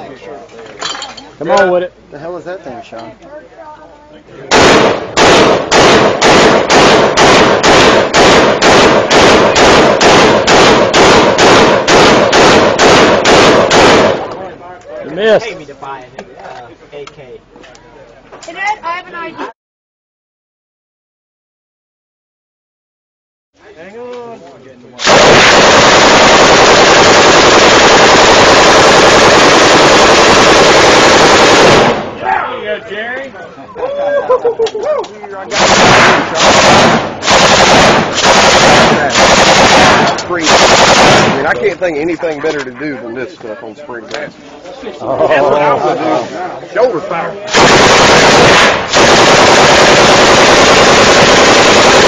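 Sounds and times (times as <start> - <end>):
automatic gunfire burst: 4.5 - 14.3, 25.0 - 32.1, 35.6 - 41.5, 47.5 - 52.0
gunshots with echo: 4.5 - 14.3, 25.0 - 32.2, 35.5 - 41.5, 47.5 - 52.0.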